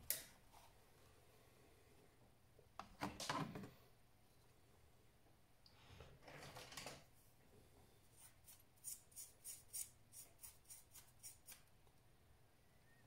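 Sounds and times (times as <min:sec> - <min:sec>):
light scratching strokes: 0:08.0 - 0:11.7.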